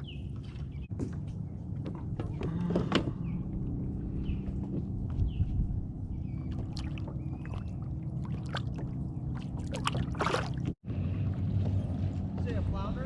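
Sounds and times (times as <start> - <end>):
water sloshing around boat: 0.0 - 3.2, 4.4 - 10.8
small clicks and splashes: 6.5 - 10.8.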